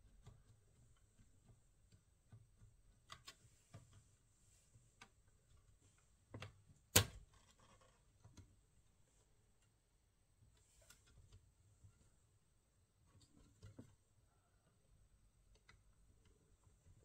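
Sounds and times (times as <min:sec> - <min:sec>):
small clicks and taps of tools: 0:00.0 - 0:04.2, 0:04.8 - 0:08.6, 0:15.5 - 0:17.0.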